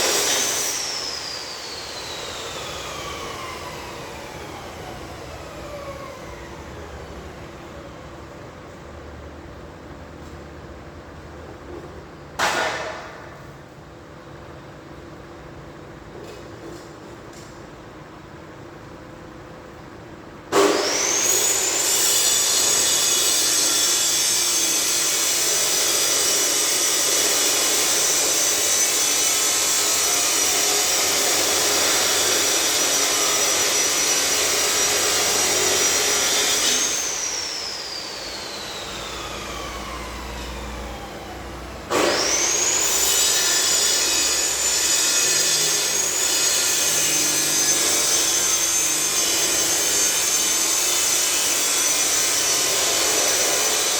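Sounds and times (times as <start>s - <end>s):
angle grinder whining and grinding: 0.0s - 7.6s, 20.6s - 53.9s.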